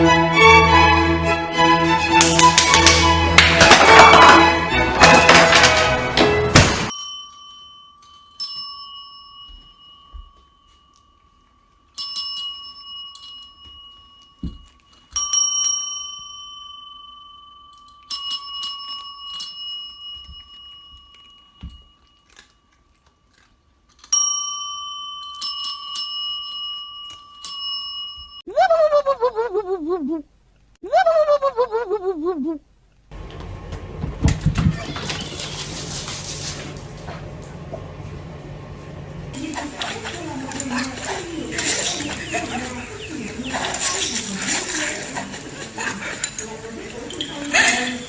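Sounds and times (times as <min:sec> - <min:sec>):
small metal bell dinging: 0:06.9 - 0:23.4, 0:24.0 - 0:28.5.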